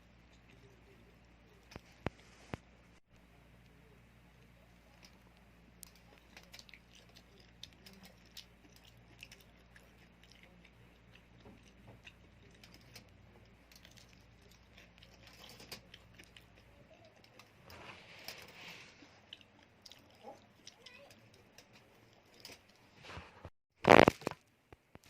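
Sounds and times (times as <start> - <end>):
cheese sticks crunching: 4.4 - 22.9, 23.9 - 24.4.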